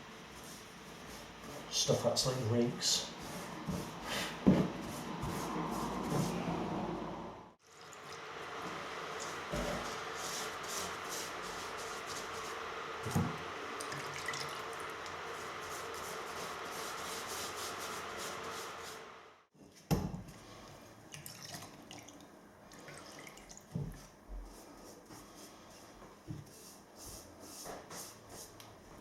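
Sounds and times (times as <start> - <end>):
paintbrush brushing wet wood: 0.0 - 6.6, 8.6 - 12.7, 15.3 - 19.0.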